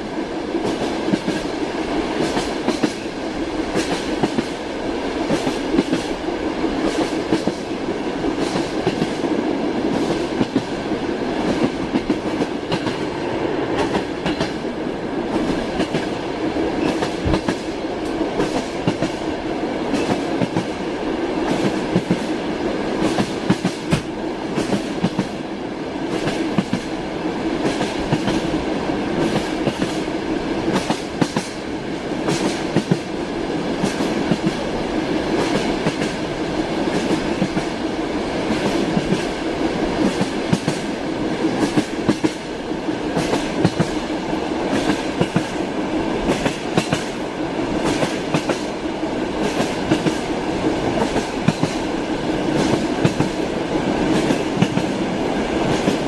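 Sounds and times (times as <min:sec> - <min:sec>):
train wheels clacking over rail joints: 0:19.9 - 0:20.7, 0:23.0 - 0:25.4, 0:32.2 - 0:33.1, 0:40.0 - 0:42.5, 0:43.1 - 0:44.0.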